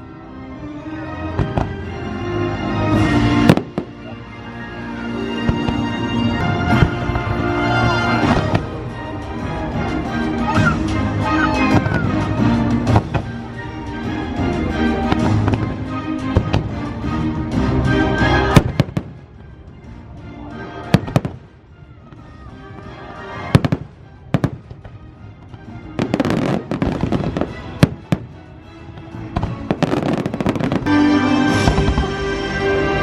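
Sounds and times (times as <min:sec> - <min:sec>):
orchestral music over loudspeakers: 0:00.0 - 0:33.0
fireworks sharp bangs: 0:29.0 - 0:32.2.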